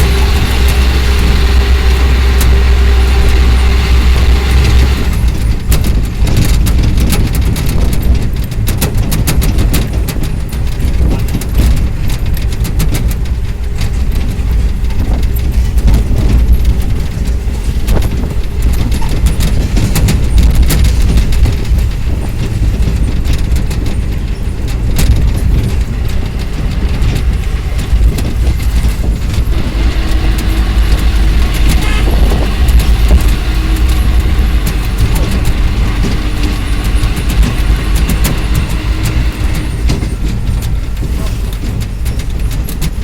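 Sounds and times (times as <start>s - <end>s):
motor vehicle rumbling: 0.0s - 43.0s.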